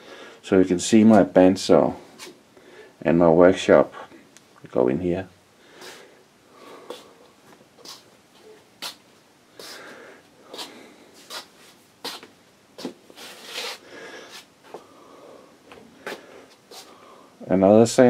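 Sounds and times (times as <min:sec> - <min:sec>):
scuffing footsteps: 0:10.5 - 0:13.8
rustling: 0:10.5 - 0:14.8.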